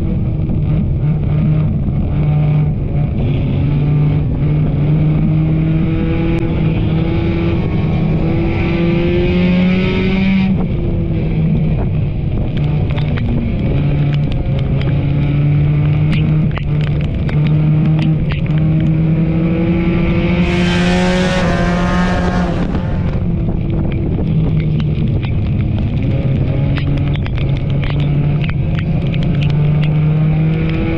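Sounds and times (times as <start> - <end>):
race car engine running: 0.0 - 30.9
sharp clicks and knocks: 12.4 - 19.3, 22.3 - 30.9
rushing noise: 16.2 - 24.2.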